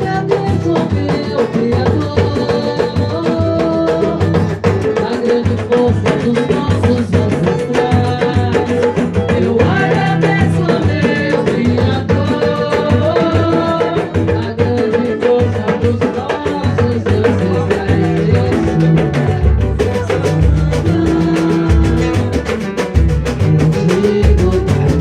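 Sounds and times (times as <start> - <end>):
fast drum beat: 0.0 - 25.0.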